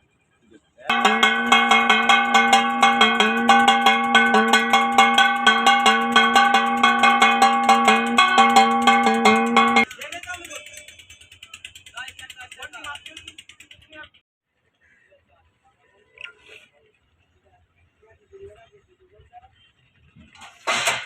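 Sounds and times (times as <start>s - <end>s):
bell-like percussive music: 0.9s - 9.9s.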